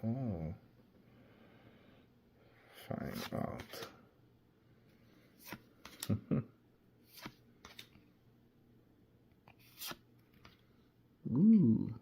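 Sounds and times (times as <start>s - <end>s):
cards clicking and rustling: 5.4s - 6.2s, 7.1s - 8.0s, 9.5s - 10.6s.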